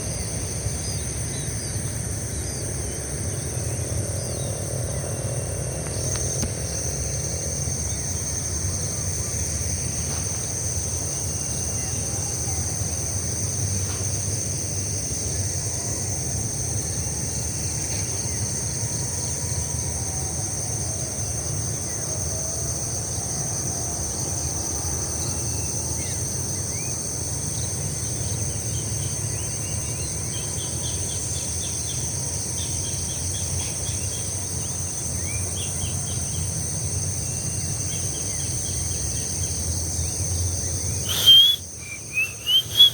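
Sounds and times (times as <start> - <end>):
insects trilling: 0.0 - 42.9
birds chirping: 41.1 - 42.9.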